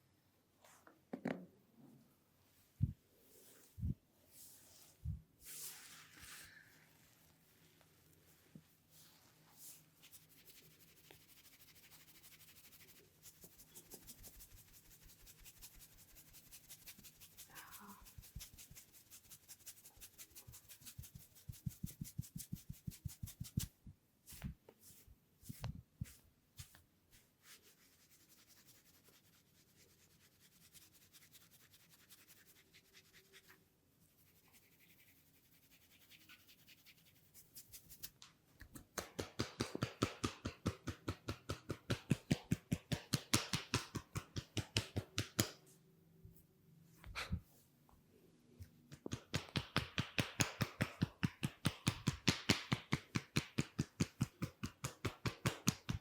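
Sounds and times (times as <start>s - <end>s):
hands tapping rapidly on head: 20.1s - 23.7s, 38.8s - 45.6s, 48.8s - 56.0s.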